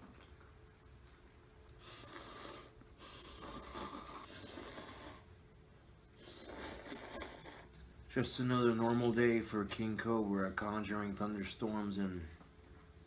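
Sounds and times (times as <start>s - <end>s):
person slurping noodles: 1.8s - 5.3s, 6.2s - 7.7s.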